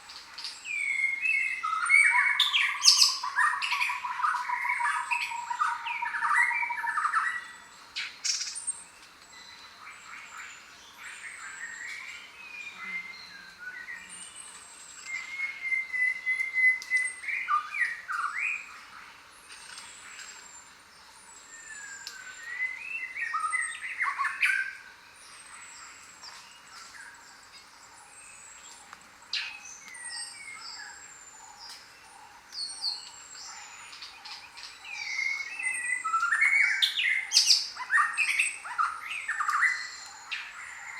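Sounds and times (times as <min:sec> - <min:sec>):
bird trill: 0:00.0 - 0:08.8, 0:19.4 - 0:40.9
lower bird chirping calls: 0:00.0 - 0:40.9.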